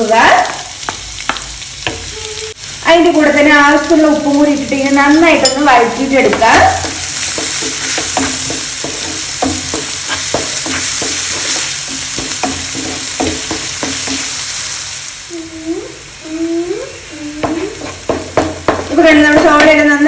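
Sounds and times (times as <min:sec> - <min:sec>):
onion sizzling in oil: 0:00.0 - 0:20.0
spatula scraping and tapping pan: 0:00.8 - 0:02.1, 0:05.1 - 0:14.7, 0:17.4 - 0:19.9.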